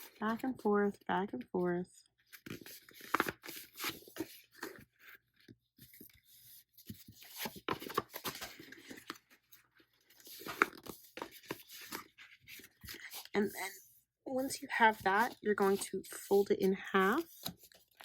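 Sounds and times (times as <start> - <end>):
paper rustling and creasing: 2.2 - 18.0.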